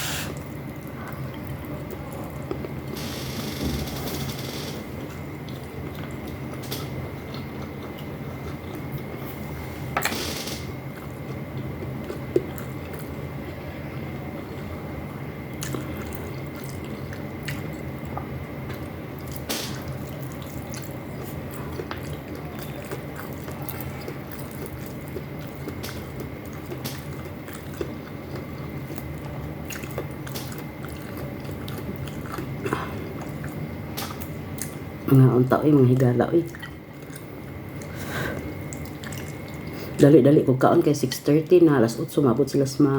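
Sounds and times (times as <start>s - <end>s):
low steady hum: 0.0s - 42.9s
person chewing food: 5.0s - 9.4s, 10.9s - 34.8s, 36.5s - 40.0s.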